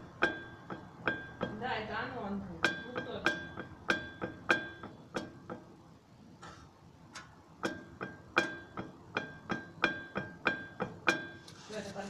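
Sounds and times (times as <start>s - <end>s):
sharp metallic knocks with ringing: 0.0s - 1.7s, 2.6s - 5.7s, 7.6s - 11.4s.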